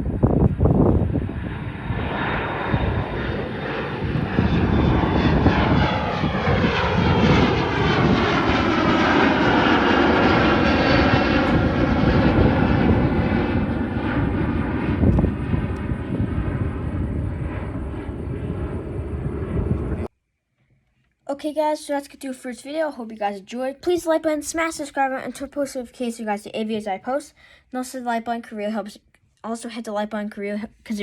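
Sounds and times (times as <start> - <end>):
jet airliner passing overhead: 0.0 - 20.1.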